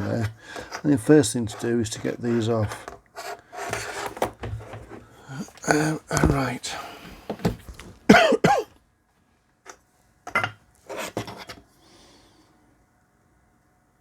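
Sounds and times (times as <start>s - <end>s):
man coughing: 8.1s - 8.7s.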